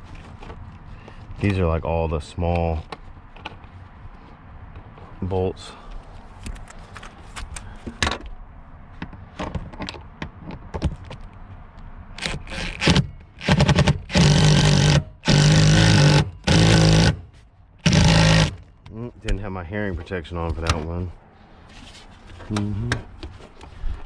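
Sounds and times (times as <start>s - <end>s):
parts clicking and scraping: 5.8s - 8.4s, 9.0s - 21.0s
impact wrench bursts: 12.2s - 18.7s.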